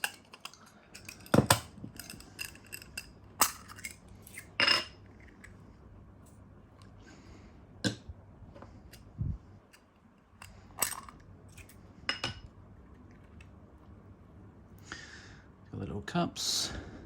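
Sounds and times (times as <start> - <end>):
metal cups clinking: 0.0 - 5.0, 12.1 - 12.4.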